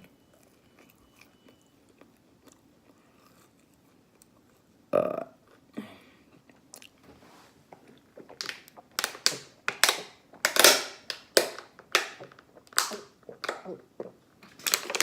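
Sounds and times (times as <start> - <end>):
open-mouth chewing: 0.3 - 4.7, 6.3 - 7.0, 7.7 - 9.6.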